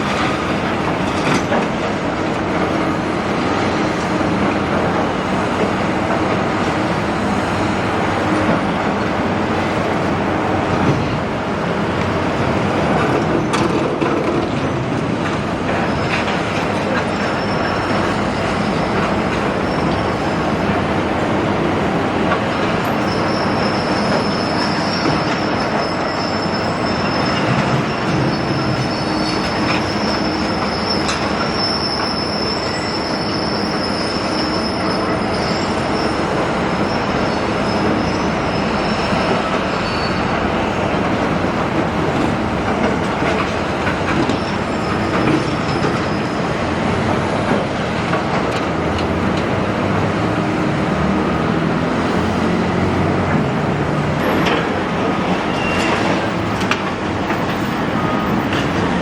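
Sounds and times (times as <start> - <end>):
high metallic squeal: 15.9 - 20.6, 22.8 - 40.8, 55.2 - 56.7.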